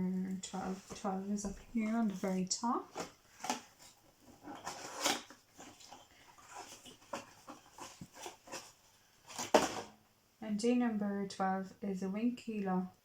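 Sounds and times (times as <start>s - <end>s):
cardboard and paper rustling and tearing: 0.5s - 9.9s.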